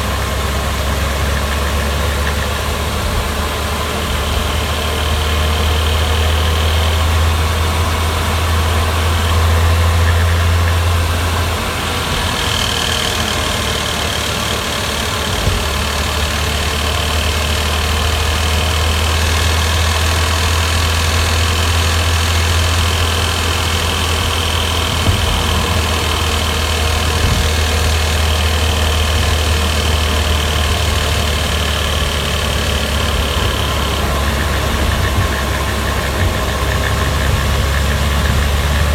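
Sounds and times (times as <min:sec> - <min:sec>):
car engine running: 0:00.0 - 0:38.9
rattle on overrun: 0:11.8 - 0:38.9.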